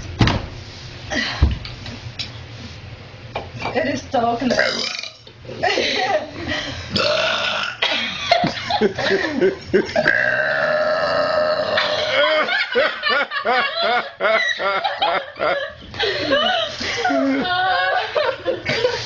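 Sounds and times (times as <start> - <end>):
girl burping loudly: 4.5 - 5.2, 7.0 - 7.9, 10.0 - 12.2.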